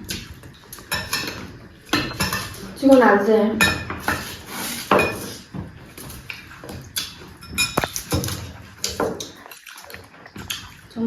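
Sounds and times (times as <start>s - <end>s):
cutlery clinking on plates: 0.0s - 2.7s, 3.6s - 5.5s, 7.0s - 9.4s
chewing and mouth sounds: 6.0s - 11.0s.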